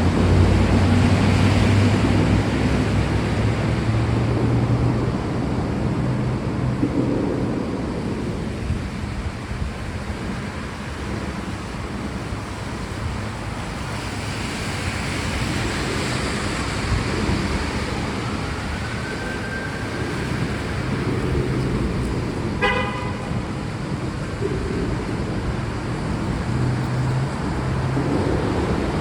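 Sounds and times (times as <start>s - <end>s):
road traffic: 0.0s - 29.0s
steady rain: 0.0s - 29.0s
short car horn toot: 22.6s - 23.4s.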